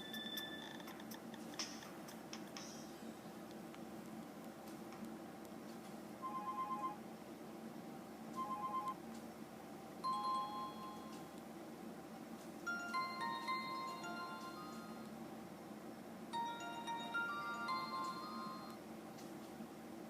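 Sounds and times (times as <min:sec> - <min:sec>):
phone chiming tune: 0:06.2 - 0:07.0, 0:08.4 - 0:09.0, 0:10.0 - 0:11.2, 0:12.7 - 0:15.0, 0:16.4 - 0:18.8
phone rapid beeping: 0:06.2 - 0:07.0, 0:08.4 - 0:09.0.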